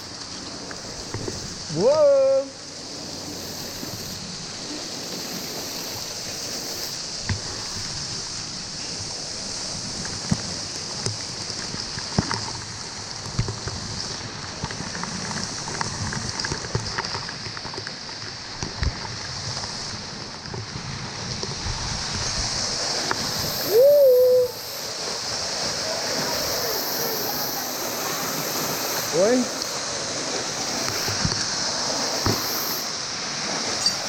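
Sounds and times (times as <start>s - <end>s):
waterfall rushing: 0.0s - 9.6s, 21.6s - 34.0s.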